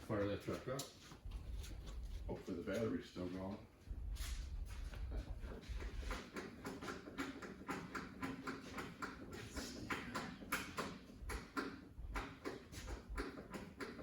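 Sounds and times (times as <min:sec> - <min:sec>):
irregular clicks and light knocks: 0:05.1 - 0:14.0.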